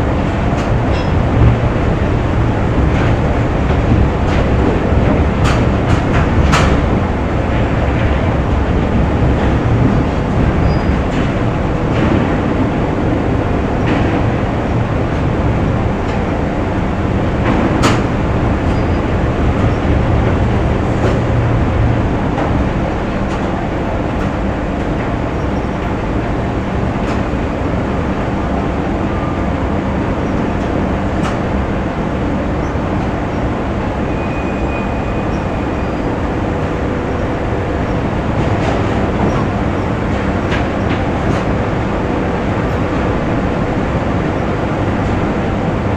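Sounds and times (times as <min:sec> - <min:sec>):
rumble and hum of machines: 0:00.0 - 0:45.9.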